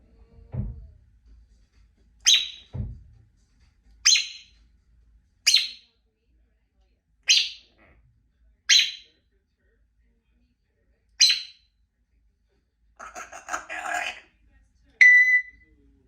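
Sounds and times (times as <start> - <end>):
low thump: 0.4 - 1.0, 2.7 - 3.2
parrot shrill calls: 2.3 - 2.7, 4.0 - 4.5, 5.5 - 5.8, 7.3 - 7.6, 8.7 - 9.1, 11.2 - 11.6, 13.0 - 14.2.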